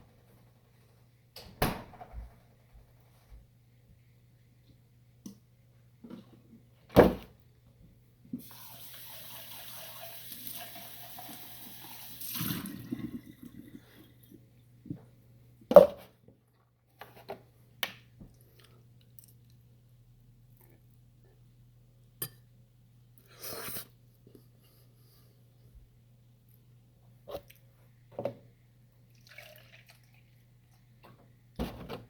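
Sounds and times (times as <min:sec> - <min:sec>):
kitchen tap running: 0:08.4 - 0:13.6.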